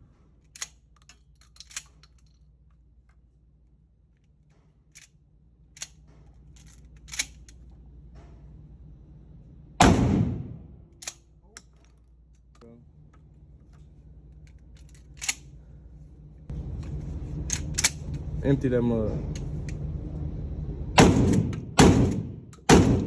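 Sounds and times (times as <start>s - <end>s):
shotgun shot: 9.8s - 10.8s, 21.0s - 23.0s.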